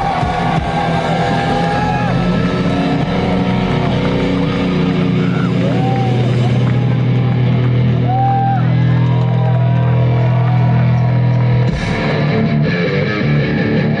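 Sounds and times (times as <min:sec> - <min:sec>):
distorted electric guitar chord: 0:00.0 - 0:08.2, 0:11.7 - 0:14.0
live rock band playing: 0:00.0 - 0:09.1, 0:10.5 - 0:14.0.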